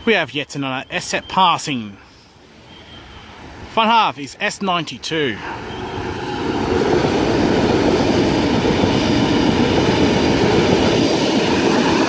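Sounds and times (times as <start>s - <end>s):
train wheels rushing on rail: 5.4s - 12.0s.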